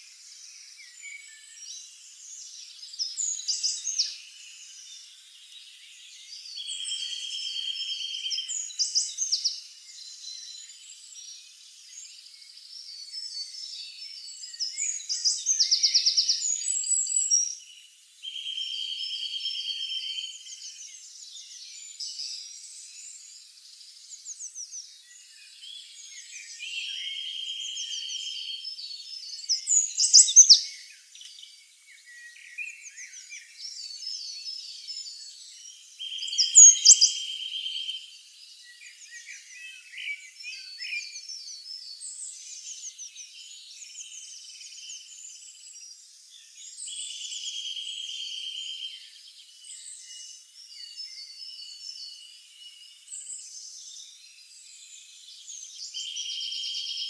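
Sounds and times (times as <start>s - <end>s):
songbirds chirping and singing: 0.0s - 57.0s
bird trill: 29.5s - 31.4s, 36.0s - 38.0s.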